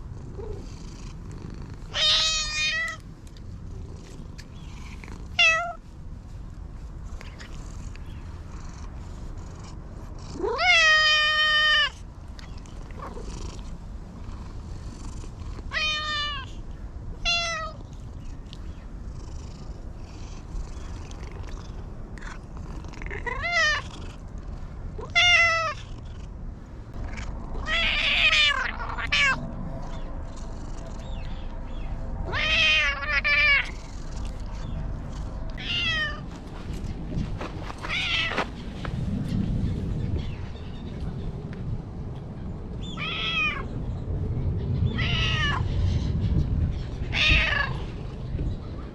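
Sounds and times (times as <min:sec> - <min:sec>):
cat meowing: 0:01.9 - 0:03.0, 0:05.3 - 0:05.8, 0:10.4 - 0:12.0, 0:15.7 - 0:16.5, 0:17.2 - 0:17.8, 0:25.0 - 0:25.9, 0:27.6 - 0:29.4, 0:32.3 - 0:33.8, 0:35.6 - 0:36.2, 0:37.8 - 0:38.4, 0:43.0 - 0:43.7, 0:44.9 - 0:45.7, 0:47.1 - 0:47.8.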